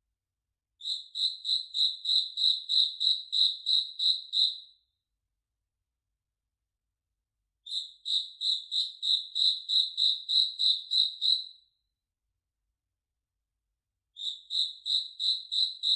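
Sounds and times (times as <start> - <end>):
cricket chirping: 0.8 - 4.6, 7.7 - 11.5, 14.2 - 15.9.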